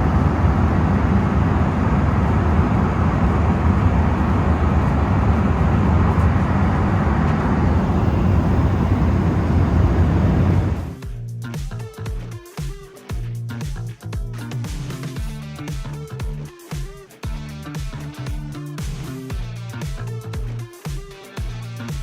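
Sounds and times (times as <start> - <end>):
steady low rumble: 0.0 - 11.4.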